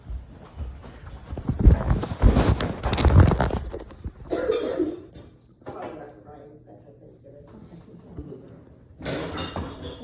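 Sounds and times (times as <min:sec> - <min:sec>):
woman coughing: 0:04.3 - 0:05.2.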